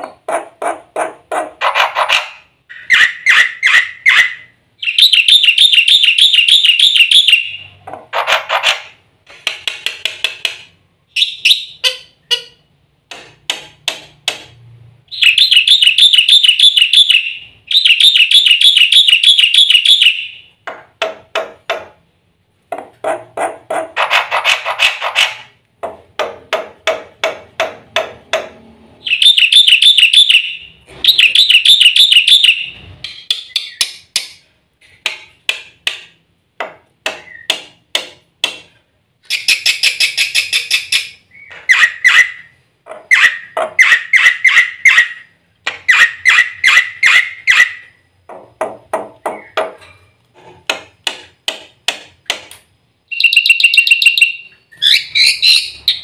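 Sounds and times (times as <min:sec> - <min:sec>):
myna bird singing: 0:00.1 - 0:08.7, 0:11.1 - 0:12.6, 0:15.1 - 0:20.6, 0:29.0 - 0:34.2, 0:37.2 - 0:37.6, 0:39.2 - 0:48.0, 0:49.0 - 0:49.8, 0:53.1 - 0:56.0.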